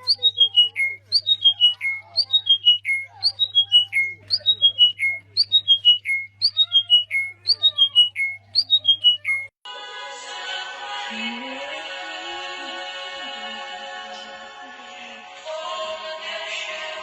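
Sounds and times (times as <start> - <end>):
bird singing repeated phrase: 0.0 - 9.5
fainter lower bird calls: 0.0 - 9.5
music: 9.7 - 17.0.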